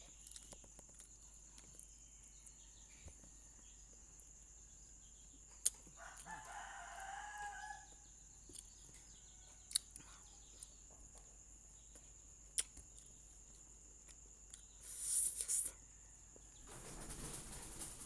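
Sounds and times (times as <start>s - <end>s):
distant rooster crowing: 5.9s - 8.2s, 8.9s - 10.5s, 15.8s - 18.0s.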